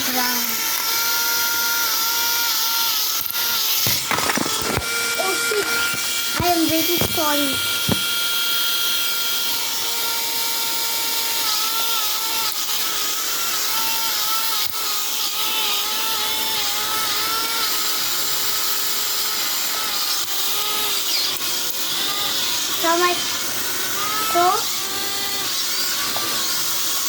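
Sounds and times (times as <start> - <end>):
electric suction fan whirring: 0.0 - 27.0.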